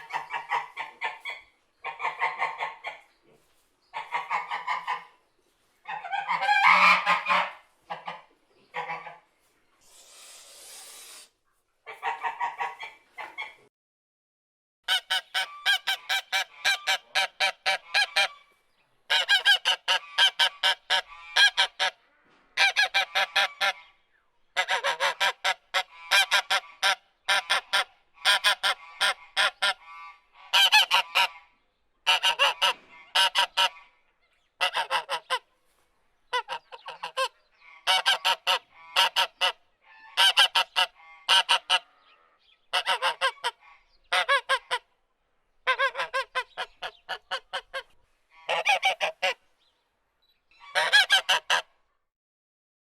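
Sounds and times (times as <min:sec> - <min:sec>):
goose honking: 0:05.9 - 0:09.2, 0:14.9 - 0:18.4, 0:19.1 - 0:22.0, 0:22.6 - 0:24.0, 0:24.6 - 0:34.0, 0:34.6 - 0:35.5, 0:36.3 - 0:44.9, 0:45.6 - 0:49.4, 0:50.6 - 0:51.8.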